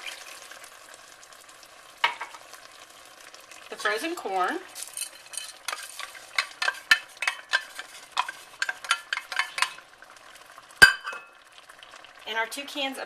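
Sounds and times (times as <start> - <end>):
faint sizzle: 0.0 - 13.0
spoon knocking and scraping in pot: 2.0 - 2.4, 4.8 - 9.8, 10.8 - 11.3.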